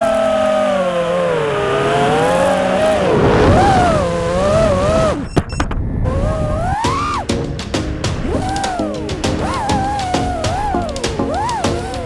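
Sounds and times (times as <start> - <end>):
quadcopter motors whining: 0.0 - 5.5, 6.1 - 7.3, 8.2 - 12.0
wind rushing on microphone: 1.8 - 12.0.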